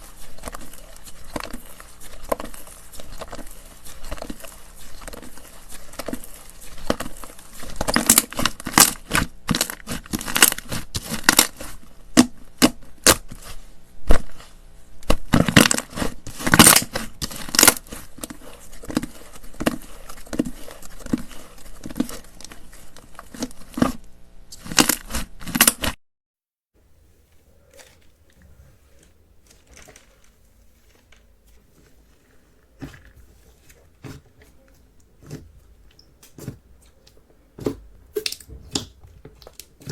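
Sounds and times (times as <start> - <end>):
faint squishes and clicks: 0.0 - 25.9, 27.3 - 39.9
slime popping and crackling: 0.0 - 25.9, 37.6 - 39.9.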